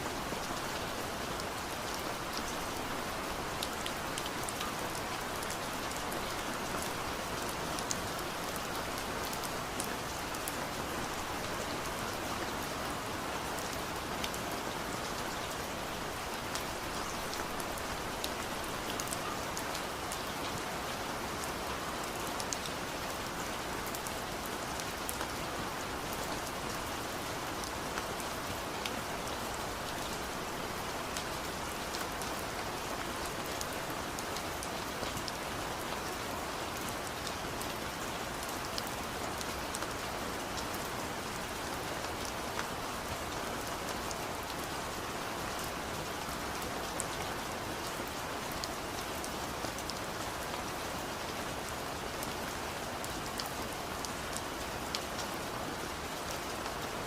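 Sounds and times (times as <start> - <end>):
steady rain hissing: 0.0 - 57.0.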